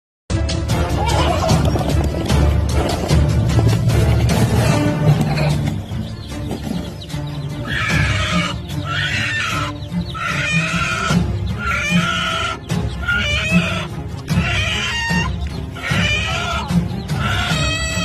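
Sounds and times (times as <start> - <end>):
music with steady beat: 0.3 - 8.8
chicken clucking: 1.1 - 17.9.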